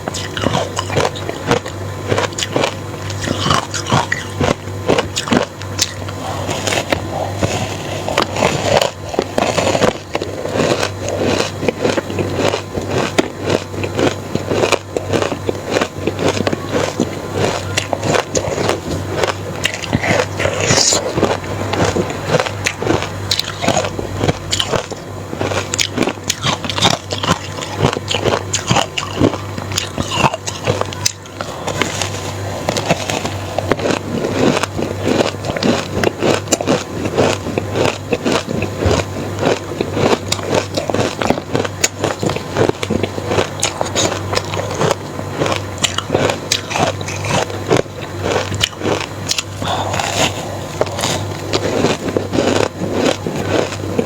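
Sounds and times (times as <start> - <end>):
crushed ice crunching: 0.4 - 54.0.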